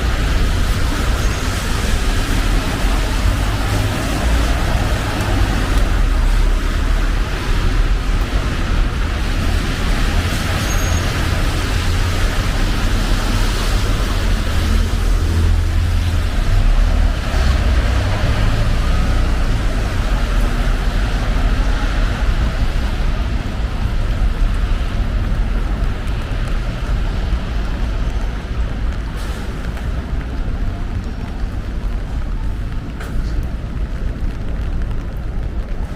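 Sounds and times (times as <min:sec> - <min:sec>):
low rumble of engines: 0:00.0 - 0:35.9
rain: 0:00.0 - 0:35.9
tyres hissing on wet road: 0:00.0 - 0:35.9.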